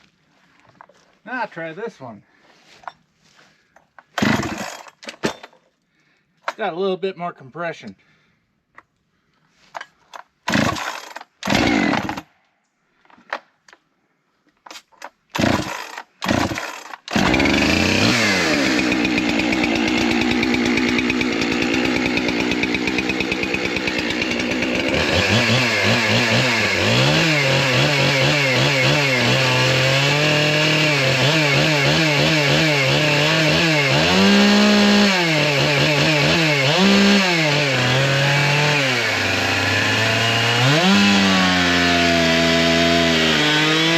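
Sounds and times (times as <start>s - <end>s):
chainsaw pull-starting and revving: 4.0s - 5.0s, 10.1s - 12.3s, 15.3s - 43.9s.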